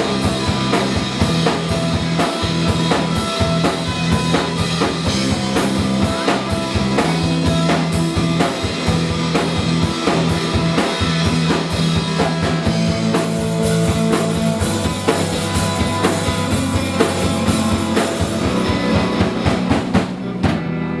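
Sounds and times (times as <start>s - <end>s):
drum kit beat: 0.0s - 20.8s
instrumental band music: 0.0s - 21.0s.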